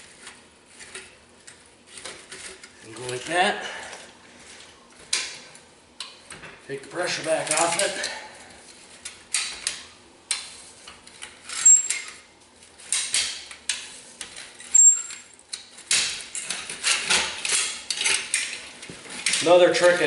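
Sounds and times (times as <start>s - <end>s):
metallic clinks and scrapes of tools: 7.1s - 20.0s.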